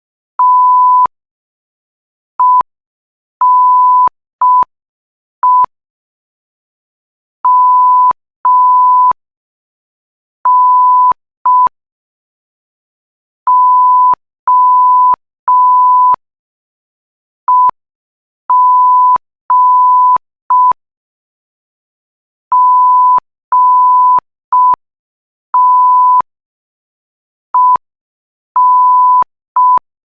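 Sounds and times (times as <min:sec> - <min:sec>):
morse code beeps: 0:03.4 - 0:04.7, 0:07.5 - 0:09.2, 0:10.5 - 0:11.7, 0:13.5 - 0:16.2, 0:18.5 - 0:20.8, 0:22.5 - 0:24.8, 0:25.6 - 0:26.2, 0:28.6 - 0:29.8.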